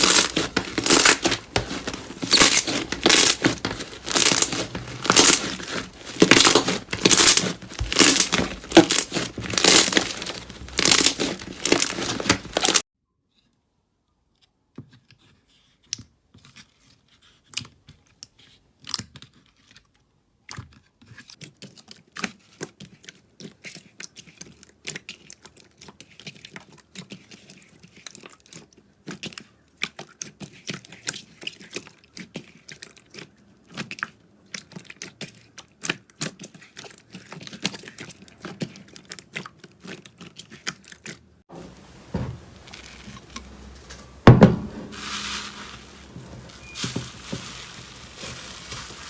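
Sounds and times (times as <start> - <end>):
slime squeezed with sticky pops: 0.0 - 12.8.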